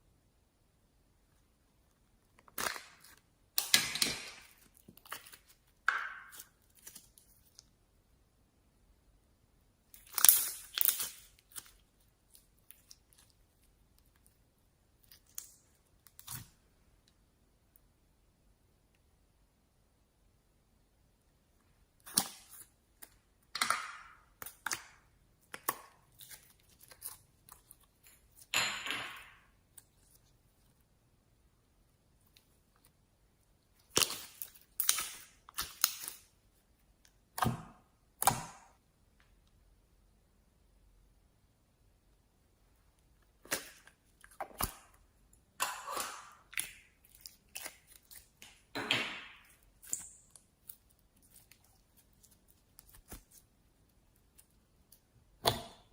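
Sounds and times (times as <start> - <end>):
slime crackling and popping: 10.0 - 14.3, 33.8 - 36.3.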